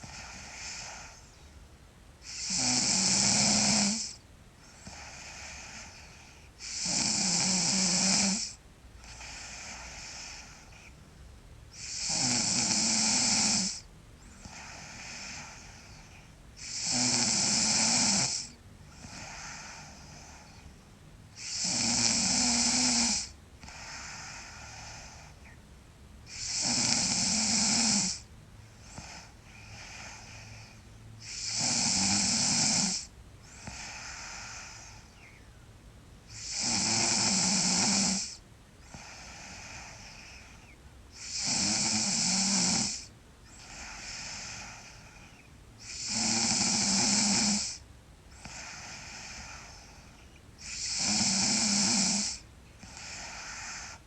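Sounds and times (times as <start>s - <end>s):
girl snoring loudly: 0.0s - 1.2s, 2.2s - 4.2s, 4.8s - 10.8s, 11.8s - 20.6s, 21.4s - 25.3s, 26.3s - 28.3s, 31.2s - 35.1s, 36.4s - 40.6s, 41.2s - 45.2s, 45.8s - 47.8s, 48.4s - 54.0s
soft breathing: 0.0s - 2.4s, 4.6s - 6.7s, 9.0s - 11.8s, 13.8s - 16.8s, 18.4s - 21.4s, 23.2s - 25.7s, 27.7s - 31.5s, 32.9s - 36.5s, 38.2s - 41.4s, 42.9s - 46.1s, 46.8s - 54.0s.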